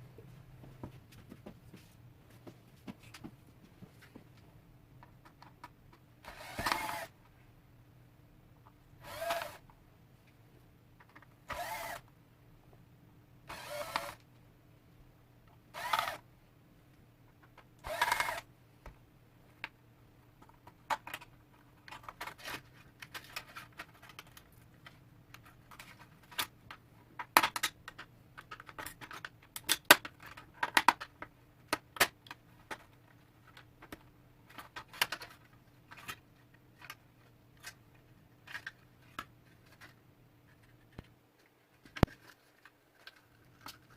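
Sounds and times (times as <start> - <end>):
faint steady hum: 0.0 - 43.9
power drill-driver running: 6.3 - 7.1, 9.0 - 9.6, 11.5 - 12.0, 13.5 - 14.2, 15.8 - 16.2, 17.8 - 18.4
plastic parts clicking and snapping: 20.4 - 36.2, 36.8 - 43.9.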